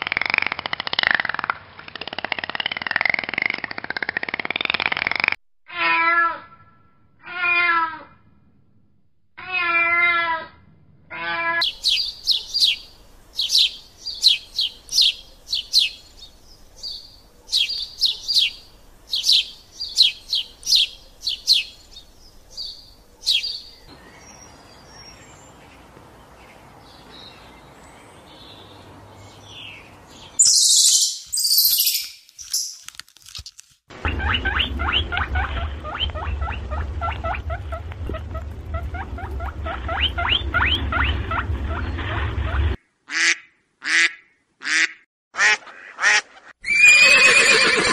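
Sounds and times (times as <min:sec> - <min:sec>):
low hum: 0:08.0 - 0:09.3, 0:10.5 - 0:14.0, 0:33.9 - 0:42.8
birds chirping: 0:11.6 - 0:32.8, 0:33.9 - 0:42.8.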